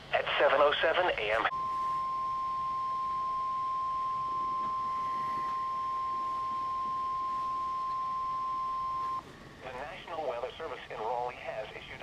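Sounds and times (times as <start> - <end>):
steady alarm tone: 1.5 - 9.2.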